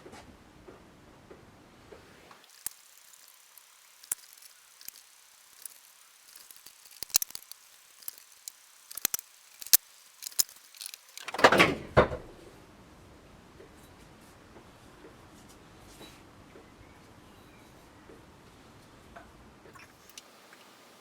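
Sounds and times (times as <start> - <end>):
tools and metal parts clicking: 4.0 - 11.5.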